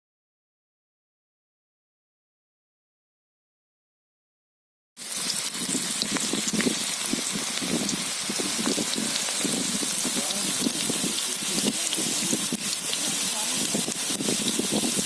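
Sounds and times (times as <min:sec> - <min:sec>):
food deep-frying in oil: 0:05.0 - 0:15.0.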